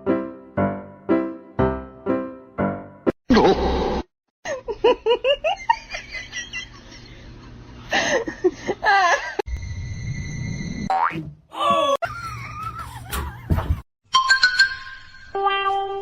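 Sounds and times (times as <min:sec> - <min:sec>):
person laughing: 0:03.3 - 0:03.8, 0:04.5 - 0:09.4, 0:11.8 - 0:13.8.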